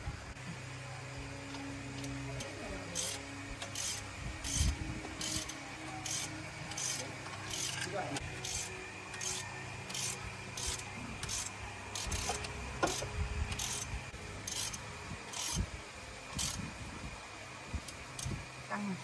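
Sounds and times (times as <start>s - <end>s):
hand tool rasping: 2.9s - 13.9s.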